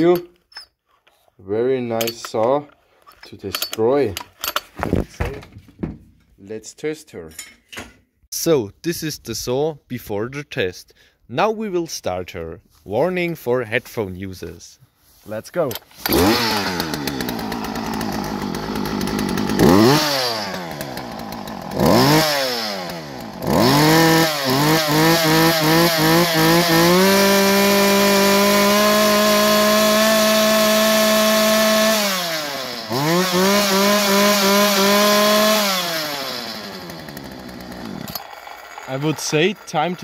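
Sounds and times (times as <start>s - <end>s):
chainsaw revving: 15.9s - 40.0s.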